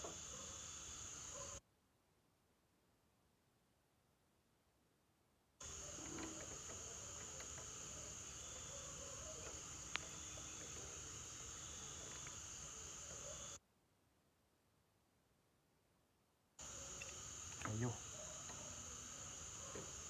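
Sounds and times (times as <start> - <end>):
crickets chirping: 0.0 - 1.6, 5.6 - 13.6, 16.6 - 20.0.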